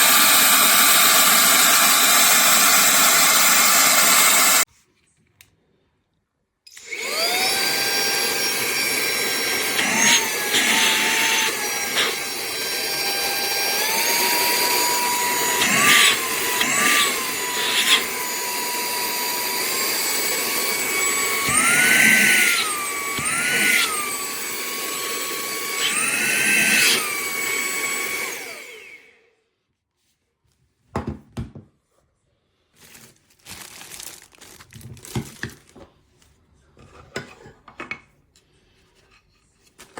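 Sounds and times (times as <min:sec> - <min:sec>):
handheld vacuum motor whining: 0:00.0 - 0:04.7, 0:06.7 - 0:29.3.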